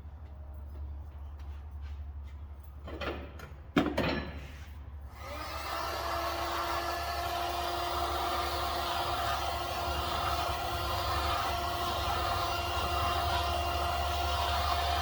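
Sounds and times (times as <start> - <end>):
heat gun blowing: 5.1 - 15.0.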